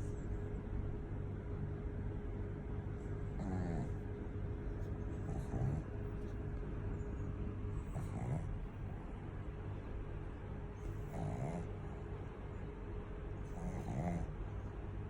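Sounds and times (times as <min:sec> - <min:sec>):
steady low rumble: 0:00.0 - 0:15.0
dog snoring: 0:03.0 - 0:06.4, 0:07.7 - 0:09.1, 0:10.8 - 0:12.2, 0:13.4 - 0:14.6.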